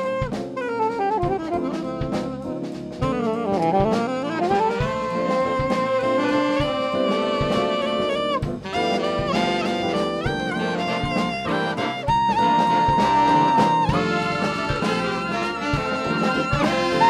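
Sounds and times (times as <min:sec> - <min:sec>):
jazz band playing: 0:00.0 - 0:17.0.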